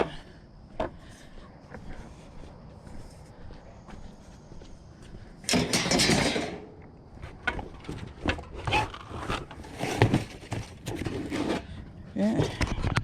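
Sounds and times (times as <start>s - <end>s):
cardboard packaging rattling and scraping: 7.6s - 11.7s.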